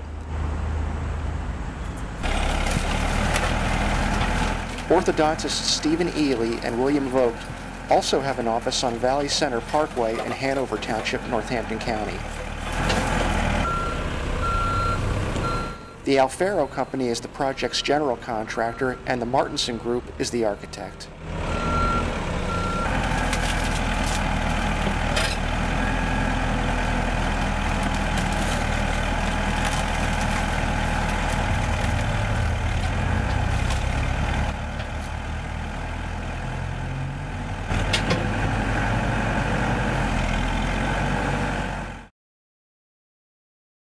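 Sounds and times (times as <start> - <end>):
heavy diesel engine running: 0.1 - 42.1.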